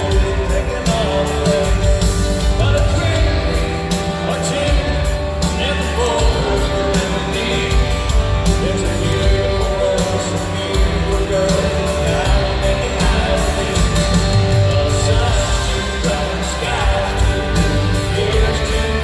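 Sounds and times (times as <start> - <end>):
country-rock band playing: 0.0 - 19.0
drumbeat: 0.0 - 19.0
person singing: 0.0 - 19.0.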